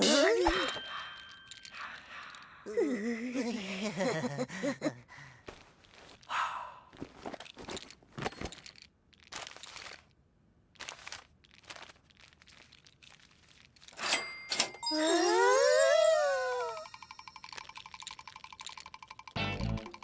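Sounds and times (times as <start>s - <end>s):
rustling and crunching sounds: 5.4s - 6.3s, 6.9s - 14.0s
brief high tone: 14.8s - 17.6s.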